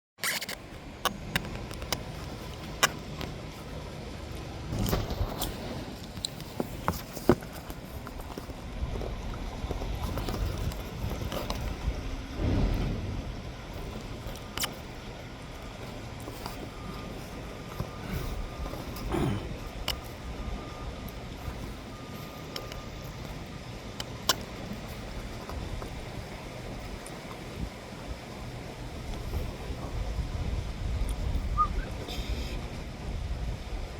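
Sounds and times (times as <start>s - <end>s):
garbage truck engine running: 11.0s - 26.7s.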